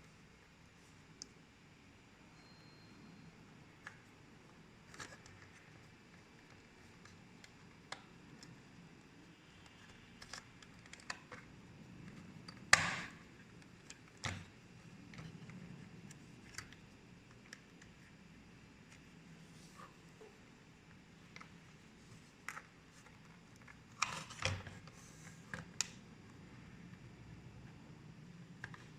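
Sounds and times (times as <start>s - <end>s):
small parts clicking and tapping: 9.5s - 18.1s.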